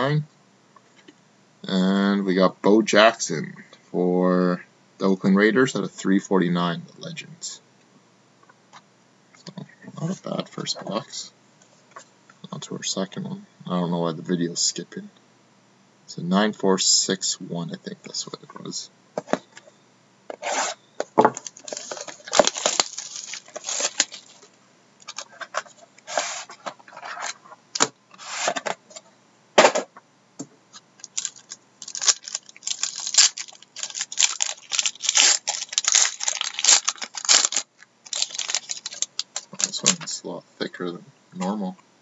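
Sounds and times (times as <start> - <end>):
plastic wrapping tearing and crinkling: 21.3 - 25.7, 31.0 - 40.1.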